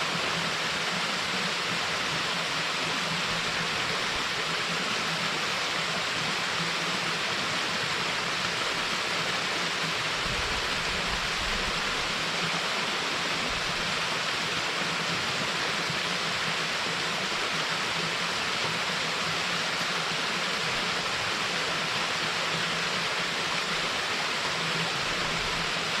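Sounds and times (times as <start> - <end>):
waterfall rushing: 0.0 - 26.0.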